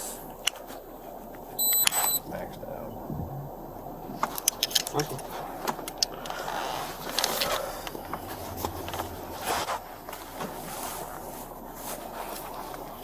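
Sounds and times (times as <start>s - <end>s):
highway traffic passing: 0.0s - 13.0s
low hum: 0.0s - 13.0s
handling clicks and rustles: 4.1s - 13.0s.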